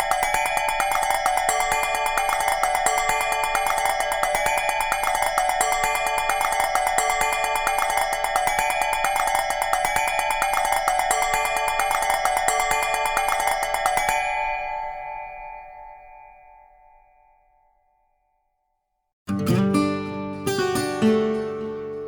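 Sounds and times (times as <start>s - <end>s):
bell-like ringtone melody: 0.0s - 16.8s.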